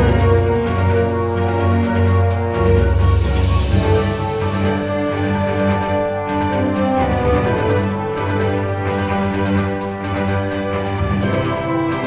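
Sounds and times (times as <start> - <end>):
steady bass line: 0.0 - 9.4
theme music with held notes: 0.0 - 12.0.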